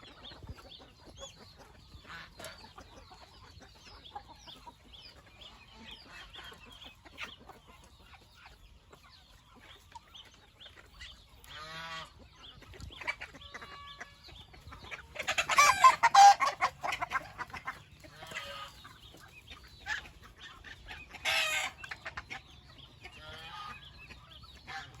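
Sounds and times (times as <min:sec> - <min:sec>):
chickens clucking and calling: 0:00.0 - 0:25.0.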